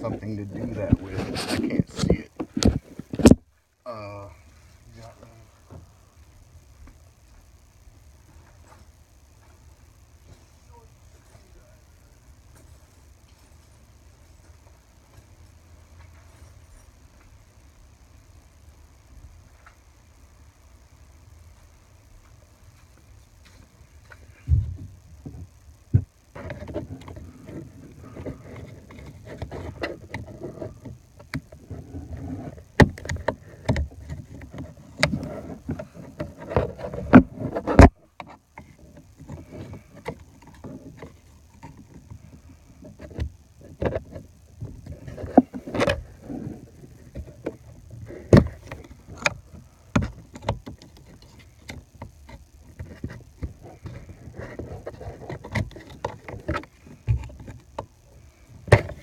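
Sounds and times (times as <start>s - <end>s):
rustling handling noise: 0.0s - 3.5s, 21.5s - 59.0s.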